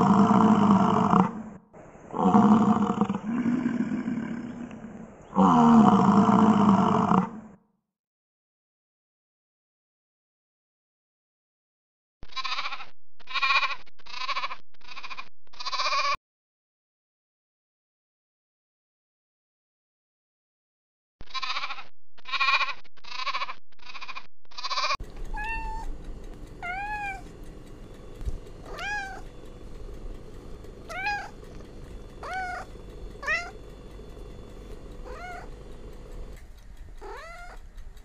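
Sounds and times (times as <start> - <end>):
cat meowing: 12.4 - 16.2, 21.4 - 26.0, 26.6 - 27.3, 28.6 - 29.4, 30.9 - 31.6, 32.2 - 33.6, 35.0 - 35.6, 37.0 - 37.6.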